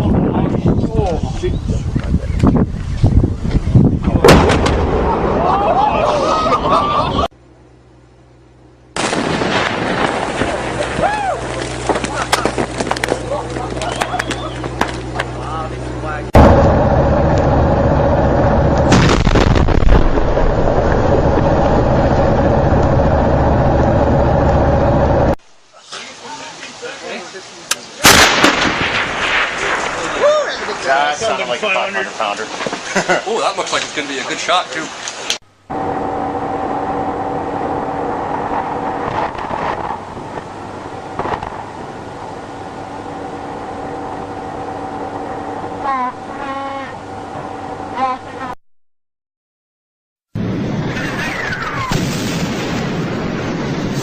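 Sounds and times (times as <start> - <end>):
faint hum: 3.2 - 25.8, 35.5 - 48.6
crackling explosion blast: 4.0 - 5.8, 8.9 - 14.0, 16.4 - 25.4, 28.0 - 31.2, 36.6 - 44.3, 50.4 - 54.0
loud rumbling background: 12.5 - 25.4, 35.5 - 48.5
loud noisy bursts: 15.6 - 25.4.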